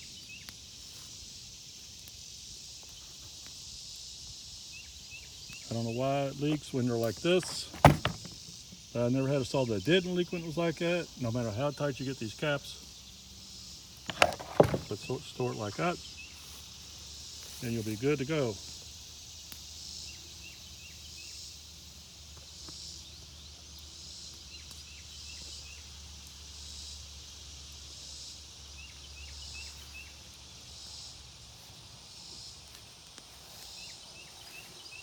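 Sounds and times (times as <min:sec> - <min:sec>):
insects buzzing: 0:00.0 - 0:35.0.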